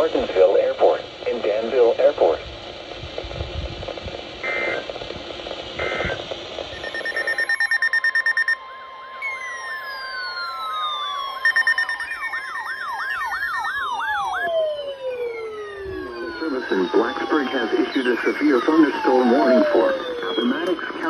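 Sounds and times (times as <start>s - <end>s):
electronic beeps: 5.8s - 8.6s, 9.2s - 21.0s
warbling siren tones: 5.8s - 21.0s.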